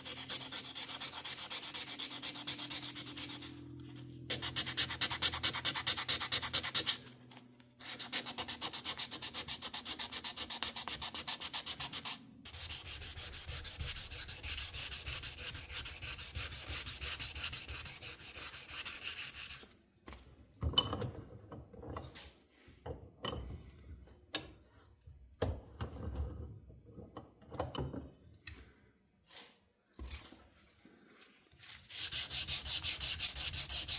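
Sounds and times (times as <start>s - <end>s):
sandpaper rubbing on knife handle: 0.0s - 3.6s, 4.3s - 7.1s, 7.8s - 19.7s, 31.9s - 33.9s.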